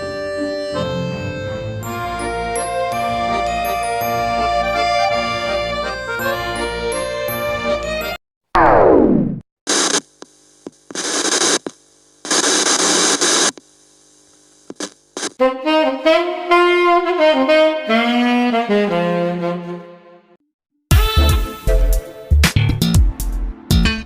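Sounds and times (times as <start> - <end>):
saxophone-like wind instrument melody: 0.0 - 8.2, 15.4 - 22.2
short bursts of noise: 9.7 - 15.4.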